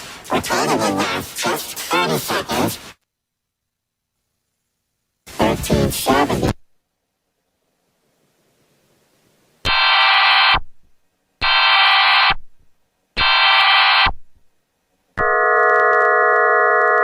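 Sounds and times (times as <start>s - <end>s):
distorted data-header bursts: 9.7s - 10.6s, 11.4s - 12.4s, 13.2s - 14.2s.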